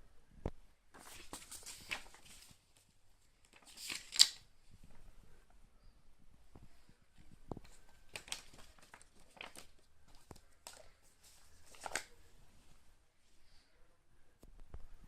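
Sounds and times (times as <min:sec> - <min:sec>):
plastic wrap crinkling and rustling: 0:07.2 - 0:12.2.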